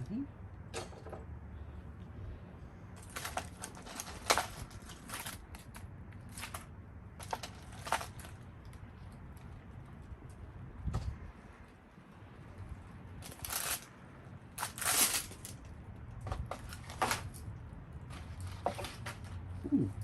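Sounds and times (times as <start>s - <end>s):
rubbish rustling and clicking: 3.0s - 11.8s, 13.2s - 19.6s.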